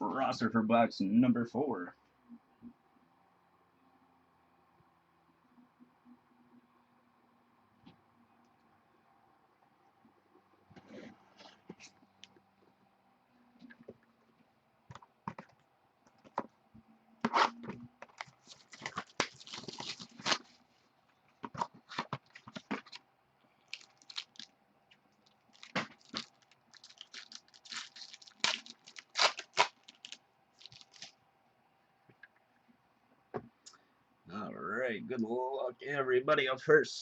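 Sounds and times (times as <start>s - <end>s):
cardboard and plastic wrapper crinkling: 17.4s - 20.6s, 21.4s - 23.0s, 23.6s - 24.5s, 25.1s - 31.1s.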